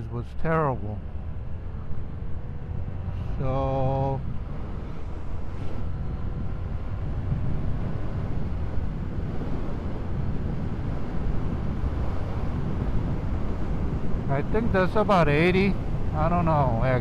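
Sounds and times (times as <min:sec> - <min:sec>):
wind rumbling on microphone: 0:00.0 - 0:17.0
motorcycle engine at speed: 0:01.0 - 0:16.3.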